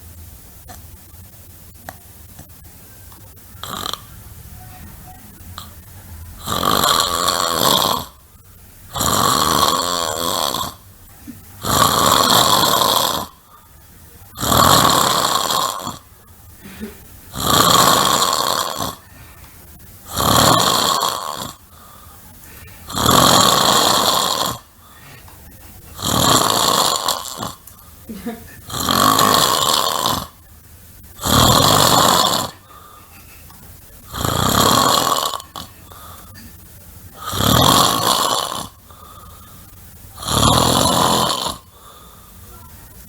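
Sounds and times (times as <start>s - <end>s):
person snoring loudly: 3.6s - 4.2s, 6.4s - 8.2s, 8.9s - 10.8s, 11.6s - 13.5s, 14.3s - 16.1s, 17.3s - 19.2s, 20.0s - 21.9s, 22.8s - 25.2s, 25.9s - 27.6s, 28.6s - 30.5s, 31.2s - 33.0s, 34.1s - 36.3s, 37.1s - 42.2s.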